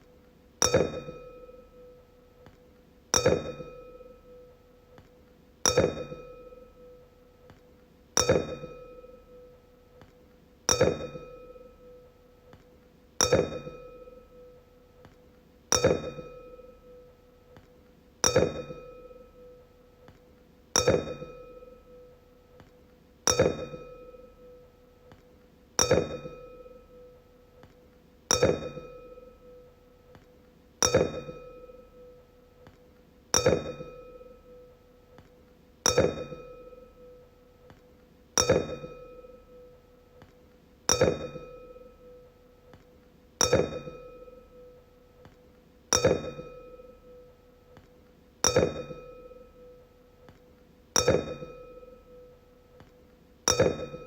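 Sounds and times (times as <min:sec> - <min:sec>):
wine glass ringing when struck: 0:00.6 - 0:01.9, 0:05.7 - 0:07.0, 0:10.7 - 0:12.0, 0:13.2 - 0:14.4, 0:28.3 - 0:29.6, 0:30.8 - 0:32.1, 0:33.4 - 0:34.6, 0:35.9 - 0:37.2, 0:38.4 - 0:39.7, 0:40.9 - 0:42.2, 0:43.4 - 0:44.7, 0:45.9 - 0:47.3, 0:48.4 - 0:49.8, 0:51.0 - 0:52.2, 0:53.5 - 0:54.0.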